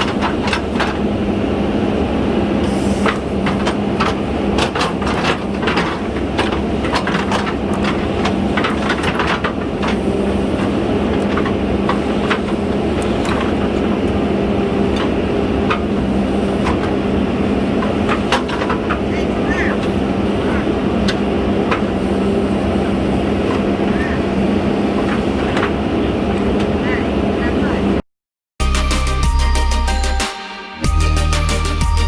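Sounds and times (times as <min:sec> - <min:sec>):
diesel engine running under load: 0:00.0 - 0:28.0
sharp knocks and clanks: 0:03.0 - 0:14.2, 0:17.8 - 0:22.0.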